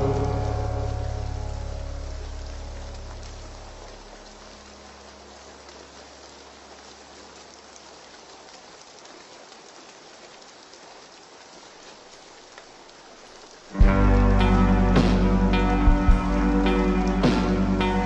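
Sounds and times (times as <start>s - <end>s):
slowed reverb-heavy song: 0.0s - 4.2s, 13.8s - 18.0s
light rain patter: 0.0s - 18.0s.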